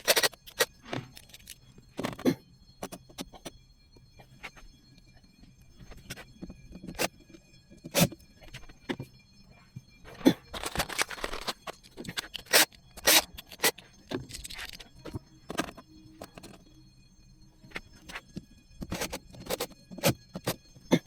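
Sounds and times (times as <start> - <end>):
objects knocking and clicking: 0.0 - 3.5, 10.1 - 16.6.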